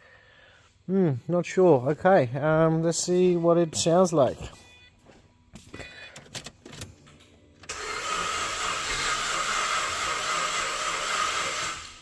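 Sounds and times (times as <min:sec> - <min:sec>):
starter motor cranking engine: 0:07.6 - 0:12.0.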